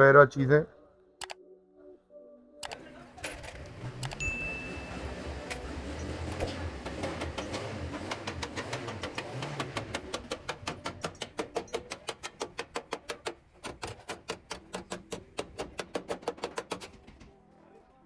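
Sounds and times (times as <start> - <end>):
faint tone: 4.2 - 5.1.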